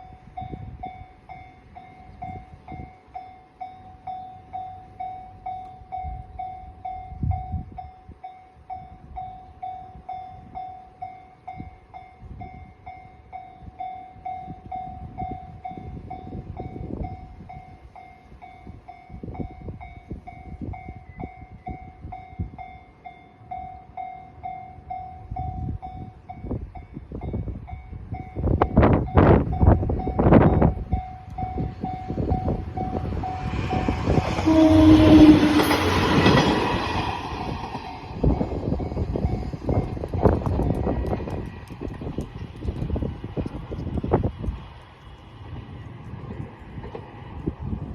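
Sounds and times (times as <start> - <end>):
railroad crossing bell ringing: 0.0 - 40.5
train rumbling: 0.0 - 47.9
train wheels clacking: 28.8 - 45.4.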